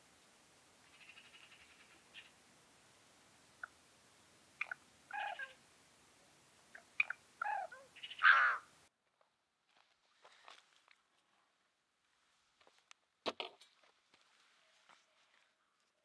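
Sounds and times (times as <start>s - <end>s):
background hiss: 0.0s - 8.9s
short animal calls: 4.6s - 5.6s, 6.7s - 8.7s.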